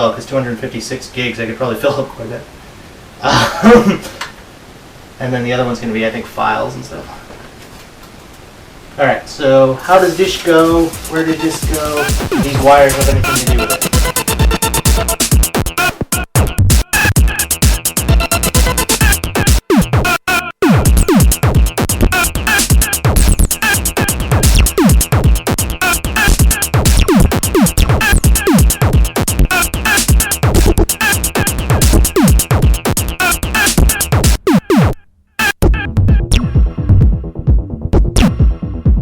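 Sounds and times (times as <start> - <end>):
electronic dance music: 9.9 - 39.0
fast drum-machine beat: 10.0 - 39.0.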